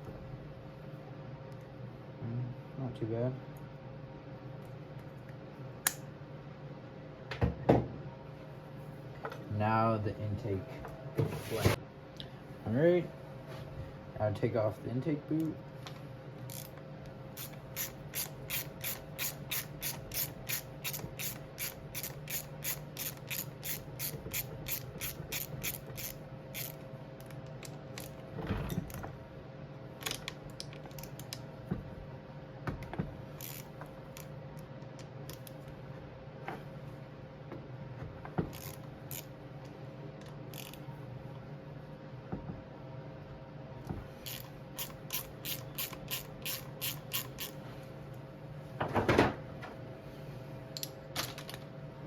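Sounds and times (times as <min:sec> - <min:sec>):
socket ratchet clicking: 0:17.4 - 0:26.8, 0:44.2 - 0:47.6.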